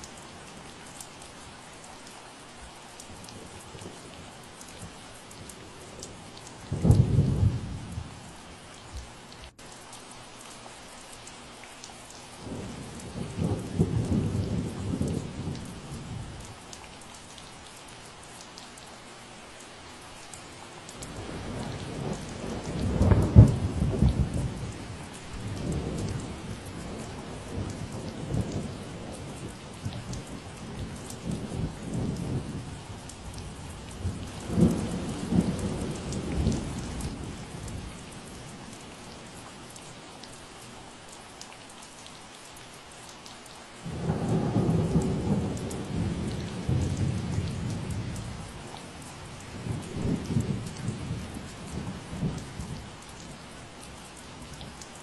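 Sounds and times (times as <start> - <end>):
steady rain falling: 0.0 - 55.0
rolling thunder: 6.7 - 8.1, 21.1 - 32.8, 33.4 - 38.0, 43.9 - 48.8, 49.6 - 52.8.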